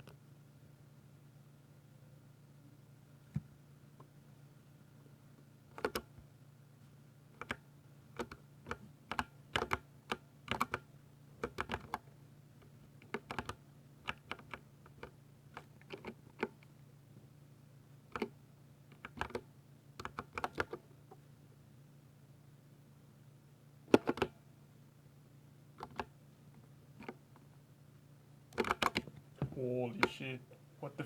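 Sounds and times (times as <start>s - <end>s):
faint low hum: 0.0s - 31.0s
mechanical keyboard clicks: 5.7s - 6.1s, 7.4s - 7.6s, 8.2s - 10.8s, 11.4s - 12.0s, 13.0s - 16.5s, 19.0s - 19.4s, 20.0s - 20.8s, 23.9s - 24.3s, 25.8s - 26.1s, 28.6s - 29.1s.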